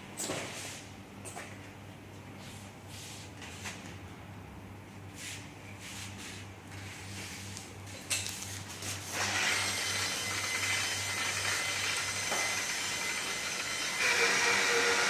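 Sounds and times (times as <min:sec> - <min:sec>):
power tool motor whining: 0:09.1 - 0:15.0.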